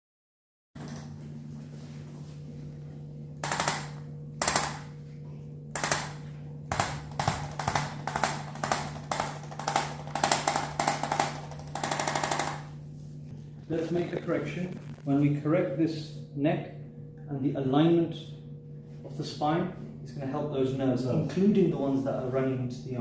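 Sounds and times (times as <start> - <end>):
steady electrical hum: 0.8 - 23.0
rapid mechanical rattling: 3.4 - 4.9, 5.7 - 12.8.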